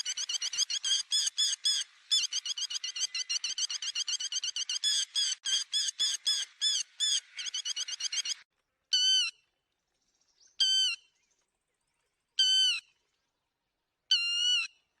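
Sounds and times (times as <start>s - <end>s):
lapwing calling: 0.0s - 9.4s.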